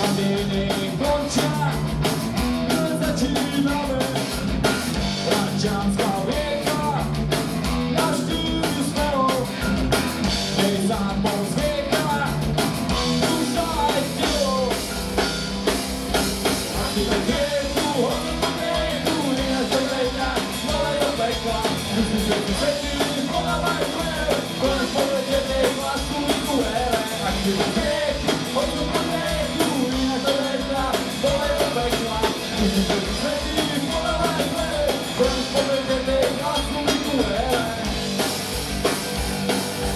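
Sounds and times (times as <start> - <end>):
drum kit: 0.0 - 39.9
electric guitars and bass: 0.0 - 39.9
person singing or shouting: 16.7 - 37.8.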